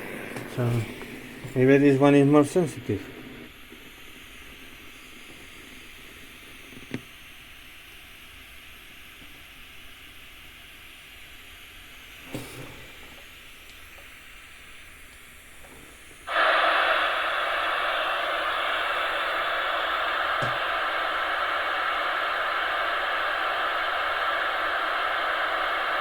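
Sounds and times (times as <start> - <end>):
radio receiver hiss: 0.0 - 26.0
loud burst of radio static: 14.8 - 26.0.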